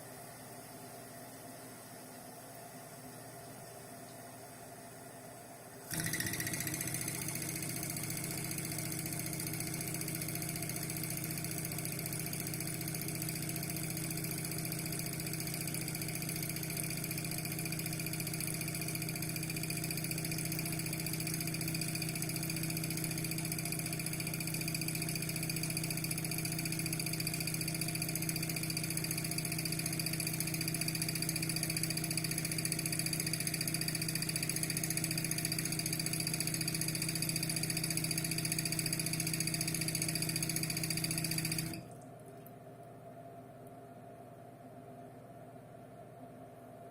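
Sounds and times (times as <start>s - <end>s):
toilet fill valve humming: 5.9s - 42.5s.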